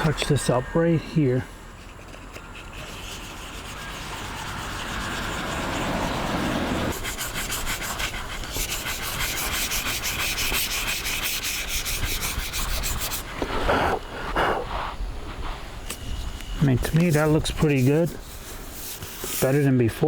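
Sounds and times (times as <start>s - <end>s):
sandpaper rubbing on filler: 2.6s - 13.9s, 16.6s - 20.0s.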